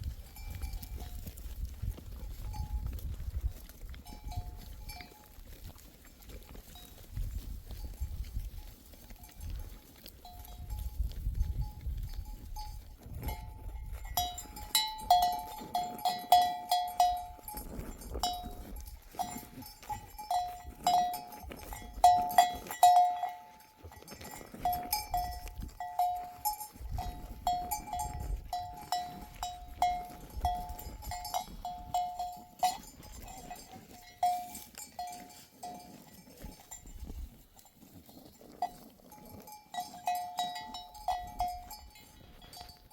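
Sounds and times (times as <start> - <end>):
sheep bells clanking: 0.0 - 42.9.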